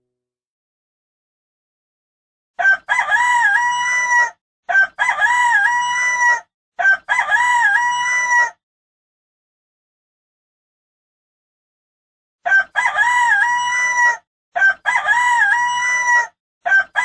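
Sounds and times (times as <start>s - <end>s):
rooster crowing: 2.6s - 8.6s, 12.4s - 17.0s.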